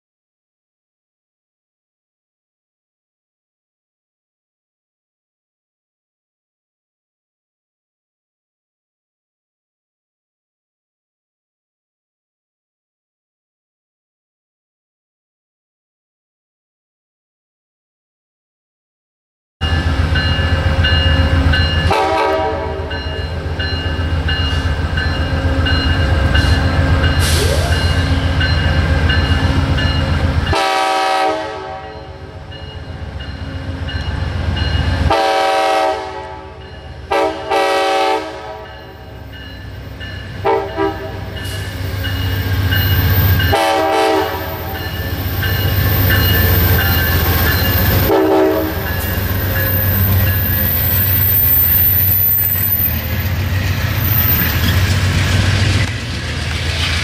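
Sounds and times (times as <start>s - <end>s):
diesel train engine rumble: 19.6s - 57.0s
train horn blasts: 21.8s - 23.3s, 30.5s - 32.4s, 35.0s - 39.2s, 40.4s - 41.6s, 43.4s - 44.9s, 48.0s - 49.2s.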